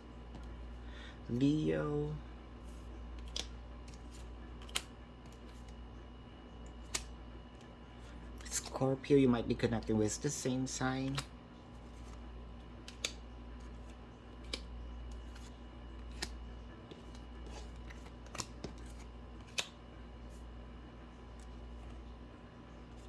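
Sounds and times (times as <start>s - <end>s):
low electrical hum: 0.0s - 23.0s
cards snapping down: 3.2s - 5.8s, 6.8s - 7.1s, 11.0s - 11.3s, 12.8s - 13.2s, 13.8s - 19.8s.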